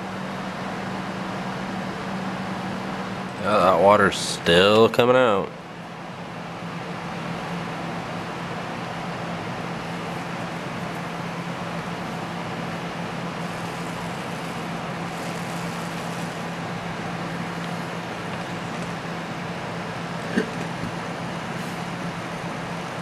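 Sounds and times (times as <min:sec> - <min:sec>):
distorted buzzing: 0:11.5 - 0:19.1.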